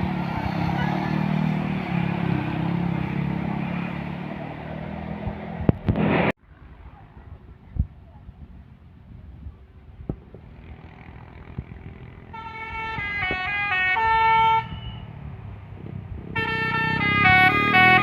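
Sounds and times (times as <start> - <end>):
musical air horn tune: 16.4 - 18.0.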